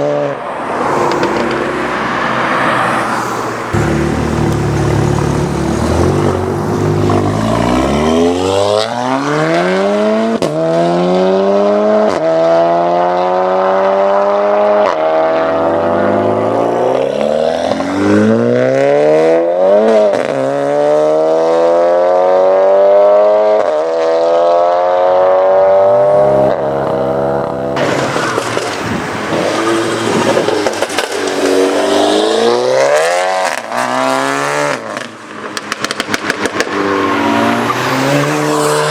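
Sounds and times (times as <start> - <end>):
car engine accelerating: 0.1 - 38.9
loud rushing noise: 0.3 - 10.0, 27.8 - 35.2.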